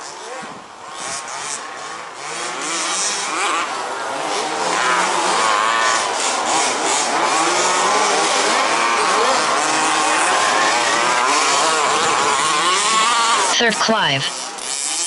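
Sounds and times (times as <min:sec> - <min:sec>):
small two-stroke engines revving: 0:00.0 - 0:15.0.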